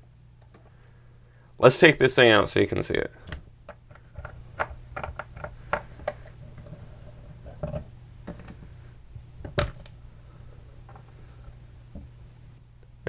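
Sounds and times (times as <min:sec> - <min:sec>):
steady low hum: 0:00.0 - 0:13.0
small parts clicking and knocking: 0:03.2 - 0:06.8.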